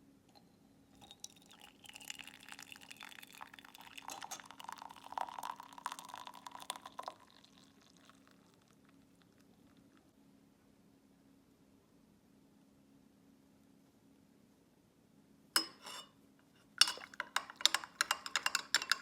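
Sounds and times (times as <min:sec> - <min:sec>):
liquid pouring into a vessel: 0:01.0 - 0:09.9.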